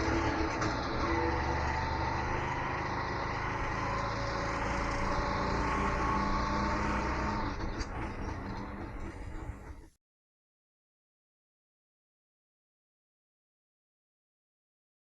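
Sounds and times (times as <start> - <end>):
auto rickshaw engine rumbling: 0.0 - 10.0.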